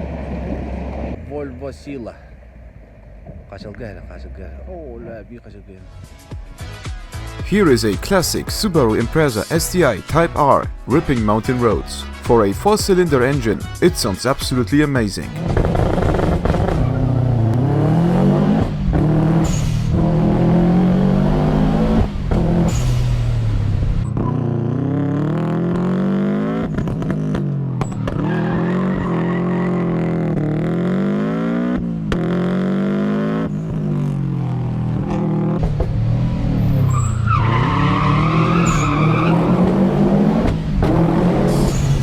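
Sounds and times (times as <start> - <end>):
car engine accelerating through gears: 0.0 - 1.6, 15.4 - 42.0.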